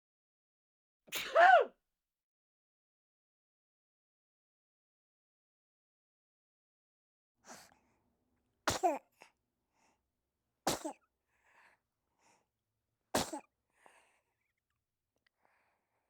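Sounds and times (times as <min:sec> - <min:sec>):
person sneezing: 0:01.1 - 0:01.7, 0:08.7 - 0:09.0, 0:10.7 - 0:11.0, 0:13.2 - 0:13.5
soft breaths: 0:08.7 - 0:10.1, 0:11.3 - 0:12.5, 0:13.7 - 0:14.4, 0:15.4 - 0:16.0.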